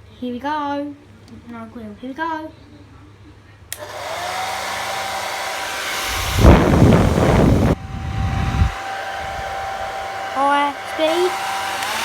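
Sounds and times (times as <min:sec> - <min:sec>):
hair dryer switch click: 0:03.7 - 0:04.8, 0:11.3 - 0:12.0
hair dryer motor and airflow: 0:03.7 - 0:12.0.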